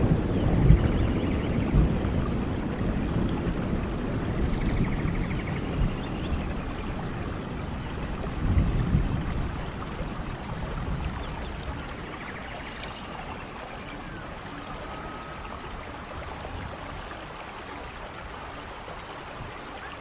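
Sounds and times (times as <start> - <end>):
rain and running water: 0.0 - 20.0.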